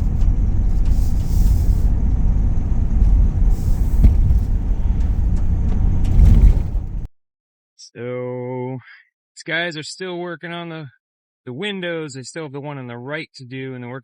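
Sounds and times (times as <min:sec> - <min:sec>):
van engine and road rumble: 0:00.0 - 0:07.1
short hissing rushes: 0:00.1 - 0:02.1, 0:03.3 - 0:05.4.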